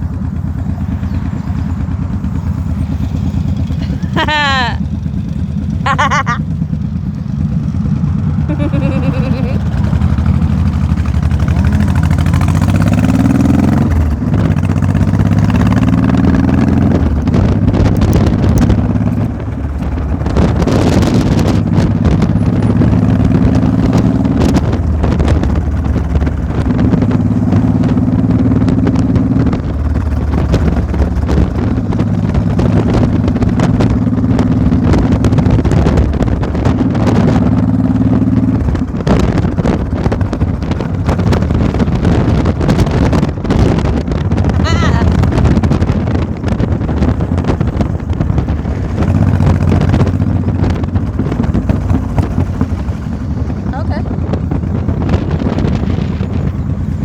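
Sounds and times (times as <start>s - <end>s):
vehicle engine running under load: 0.0s - 57.0s.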